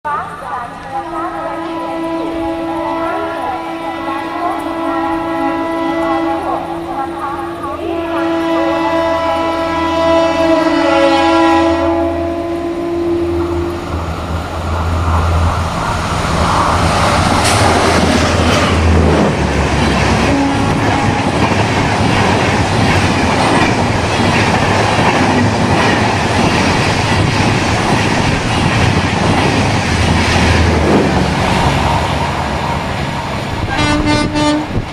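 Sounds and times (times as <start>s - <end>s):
train wheels rushing over rails: 12.5s - 34.9s
clickety-clack of rail joints: 16.5s - 31.8s.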